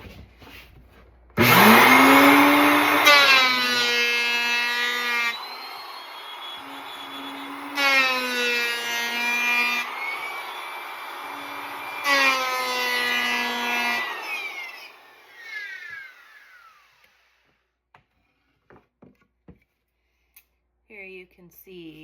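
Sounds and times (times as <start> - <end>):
electric planer cutting wood: 1.4 - 17.4
planer motor whining down: 1.4 - 17.4.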